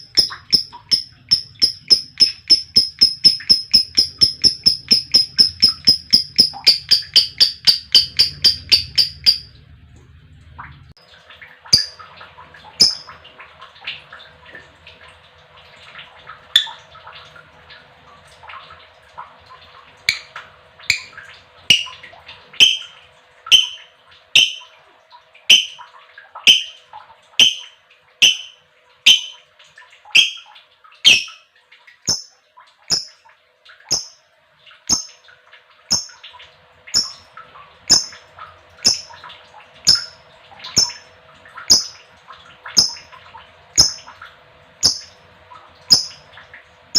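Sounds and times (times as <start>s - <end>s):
lovebird squawky chirps: 27.4s - 29.4s, 31.1s - 31.4s.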